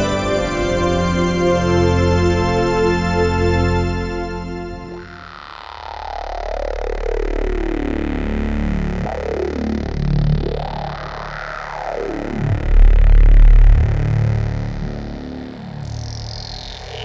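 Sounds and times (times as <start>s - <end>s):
held low synth bass: 0.0s - 5.3s
synthesizer sweeping tones: 0.0s - 5.4s.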